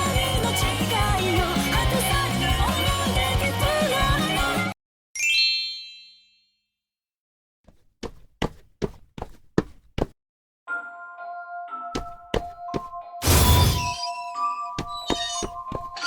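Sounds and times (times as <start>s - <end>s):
bright ding: 13.2s - 15.5s.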